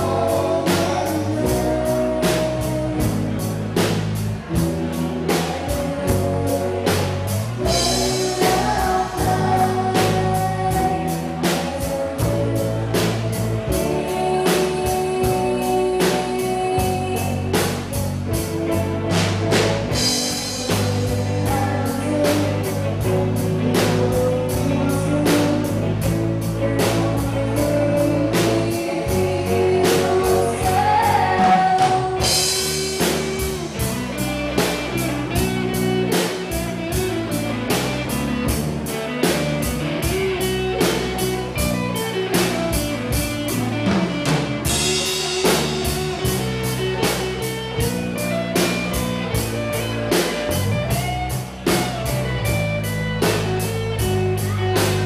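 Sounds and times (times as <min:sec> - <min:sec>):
person singing: 0:00.0 - 0:37.8
rock band playing: 0:00.0 - 0:55.0.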